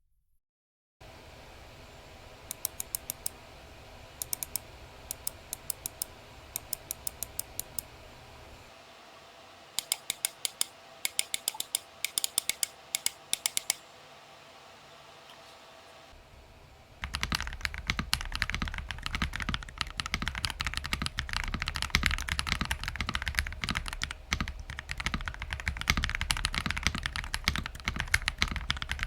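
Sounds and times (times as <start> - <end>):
mechanical keyboard typing: 2.5 - 3.3, 4.2 - 7.9, 9.8 - 13.8, 17.0 - 29.0.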